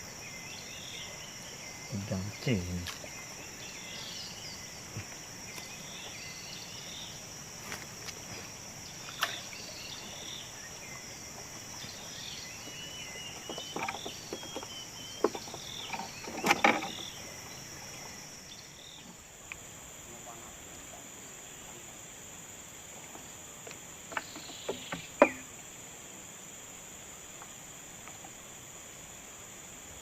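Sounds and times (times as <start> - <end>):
insects chirring: 0.0 - 30.0
short insect chirps: 0.0 - 30.0
sharp knocks: 24.2 - 25.5.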